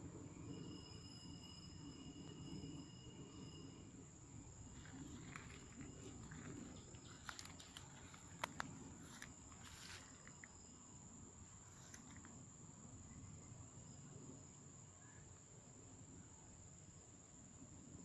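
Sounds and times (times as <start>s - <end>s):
high-pitched insect drone: 0.0s - 18.0s
sharp clicks and rustles: 4.7s - 10.6s, 11.7s - 12.4s.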